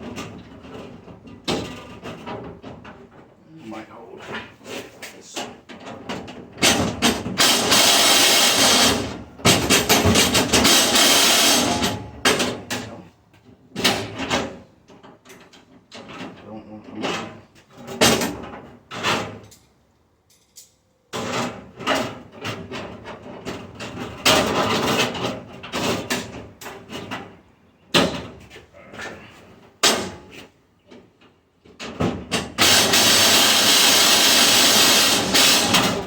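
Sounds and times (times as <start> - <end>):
metal knocking and clattering: 5.4 - 7.9, 8.7 - 12.9
loud harsh steady noise: 7.4 - 9.2, 10.6 - 12.0, 32.6 - 36.0.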